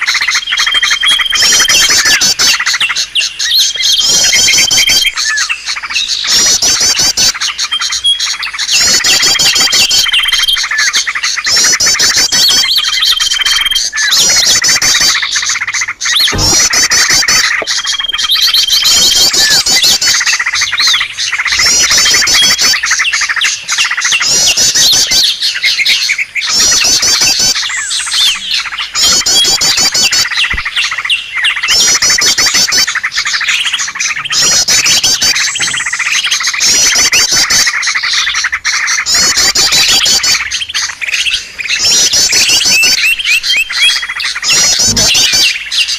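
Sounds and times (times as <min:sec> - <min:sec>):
songbirds twittering trills: 0:00.0 - 0:45.9.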